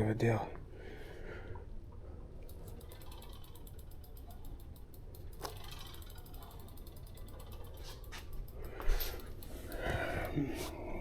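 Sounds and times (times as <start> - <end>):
bicycle freewheel clicking: 2.5 - 10.4.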